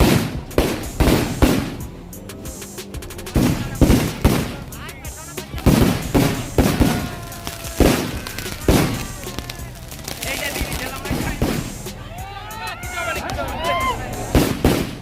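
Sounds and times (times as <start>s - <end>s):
fireworks banging with echo: 0.0s - 2.0s, 2.6s - 12.0s, 12.9s - 15.0s.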